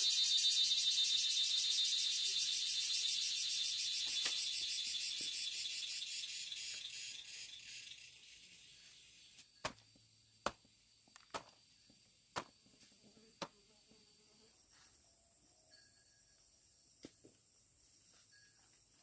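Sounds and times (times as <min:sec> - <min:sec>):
insects trilling: 0:00.0 - 0:17.0.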